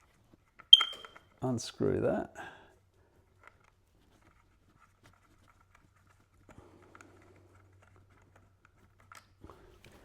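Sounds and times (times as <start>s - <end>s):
screwdriver clicks and scrapes: 0.6s - 1.2s.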